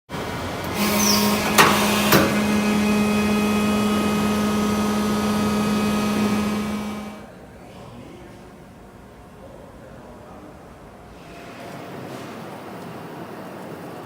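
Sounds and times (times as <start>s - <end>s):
hydraulic power unit humming: 0.1s - 14.0s
brief high squeak: 0.8s - 1.7s
sharp metallic clunks: 0.8s - 2.6s.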